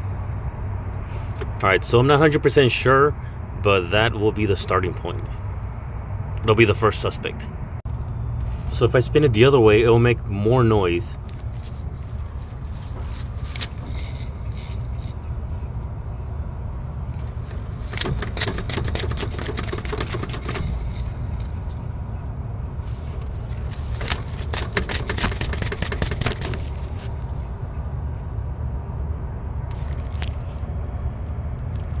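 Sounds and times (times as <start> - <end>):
pulley bearing gritty clicking: 11.3 - 15.8, 17.1 - 27.6.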